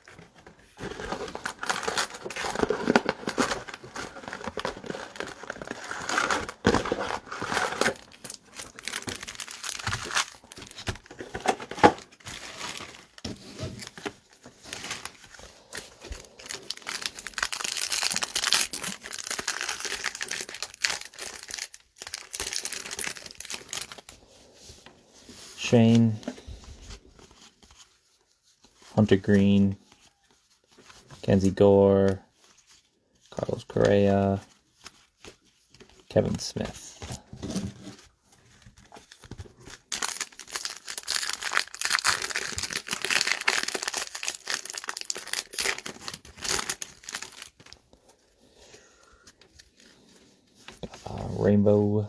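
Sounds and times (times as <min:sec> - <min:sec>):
wrappers tearing and crinkling: 0:00.0 - 0:24.1, 0:37.1 - 0:48.2.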